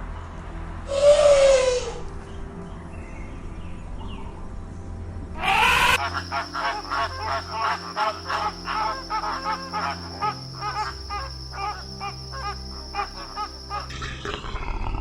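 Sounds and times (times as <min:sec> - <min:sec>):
loud harsh animal call: 0:05.4 - 0:13.9.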